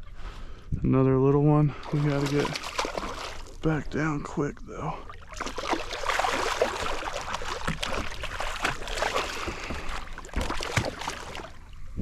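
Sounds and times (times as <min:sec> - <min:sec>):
water splashing against kayak: 0:01.8 - 0:03.7, 0:05.0 - 0:12.0.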